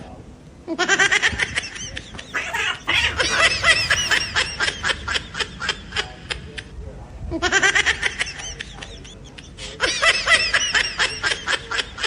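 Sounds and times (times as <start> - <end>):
high-pitched laughter: 0.7 - 5.8.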